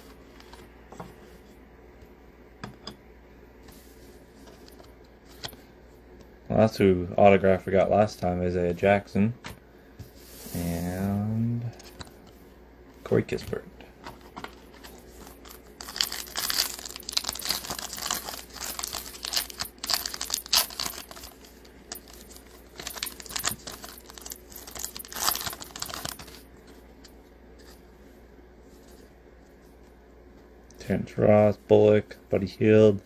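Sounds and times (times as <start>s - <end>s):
wrapper tearing and crumpling: 15.8s - 21.4s, 22.8s - 26.4s.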